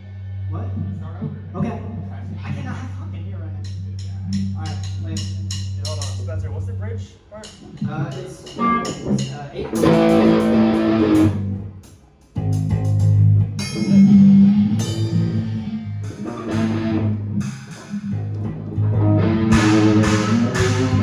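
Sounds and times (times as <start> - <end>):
rock band playing: 8.5 - 11.6, 12.4 - 21.0
electric guitar chords: 8.6 - 11.8, 12.4 - 21.0
drum hits: 19.5 - 21.0.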